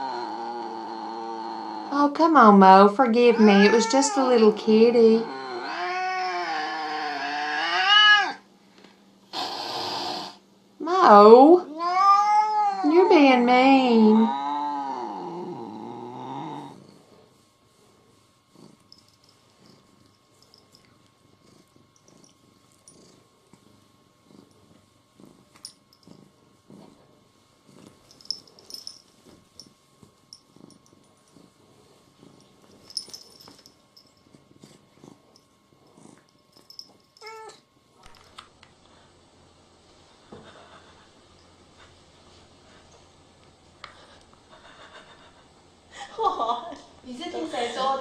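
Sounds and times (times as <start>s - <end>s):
cat purring: 0.0s - 7.8s, 9.3s - 10.5s, 13.4s - 45.9s
cat meowing: 5.4s - 8.4s, 11.7s - 12.9s.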